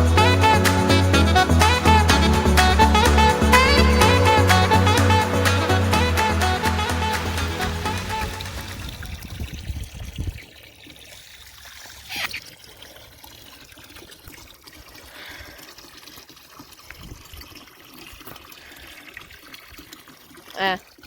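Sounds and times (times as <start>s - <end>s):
water pouring into a tank: 0.0s - 21.0s.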